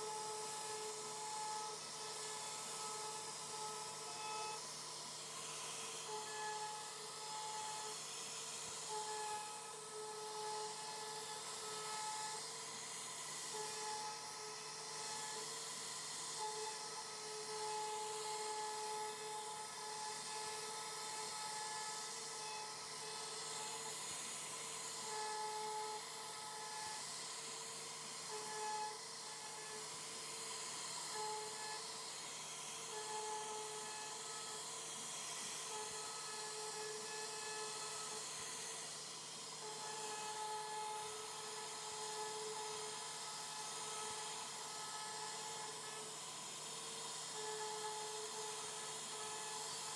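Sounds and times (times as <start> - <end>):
cnc router hiss: 0.0 - 49.9.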